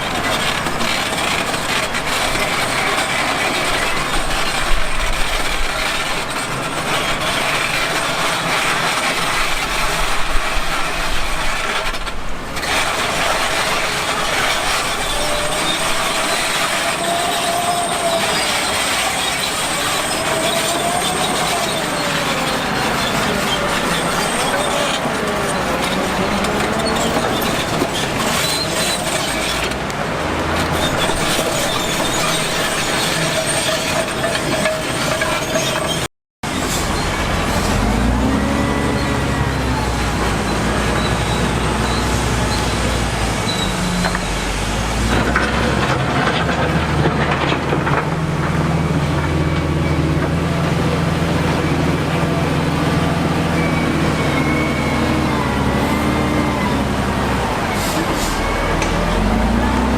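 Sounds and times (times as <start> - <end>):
construction machinery noise: 0.0 - 59.9
diesel engine revving: 0.0 - 59.9
thin high squeal: 13.0 - 29.7, 30.8 - 44.6.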